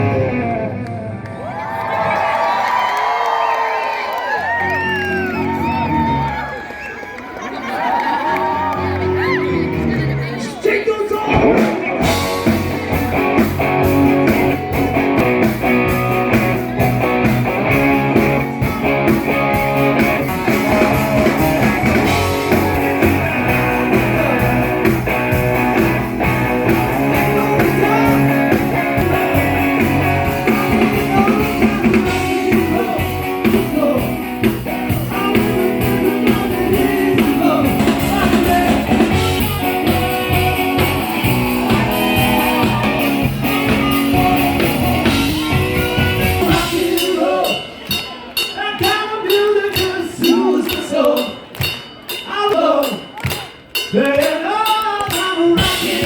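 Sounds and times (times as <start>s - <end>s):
bass guitar: 0.0s - 1.6s, 4.5s - 6.5s, 8.4s - 10.6s, 11.2s - 48.0s
electric guitars: 0.0s - 2.4s, 11.2s - 48.0s
drum kit: 11.2s - 56.0s
person singing: 19.9s - 51.4s, 52.3s - 56.0s.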